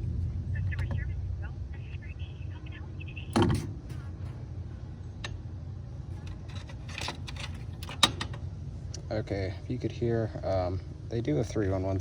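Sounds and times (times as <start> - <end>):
steady low rumble: 0.0 - 12.0
payphone handset clunk: 3.4 - 3.8.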